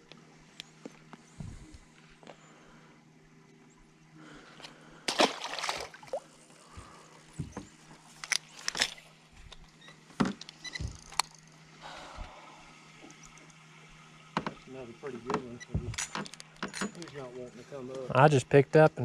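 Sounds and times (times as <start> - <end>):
faint water sloshing: 0.0 - 18.0
low steady hum: 0.0 - 19.0
sharp knocks and clicks: 10.2 - 11.4, 14.3 - 14.6.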